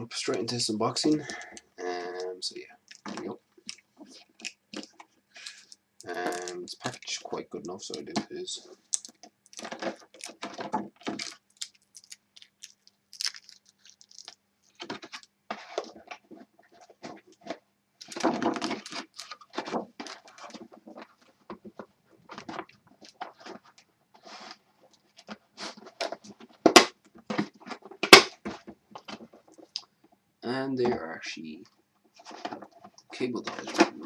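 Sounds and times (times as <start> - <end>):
cardboard and plastic packaging rustling: 7.8 - 29.8, 32.1 - 34.0.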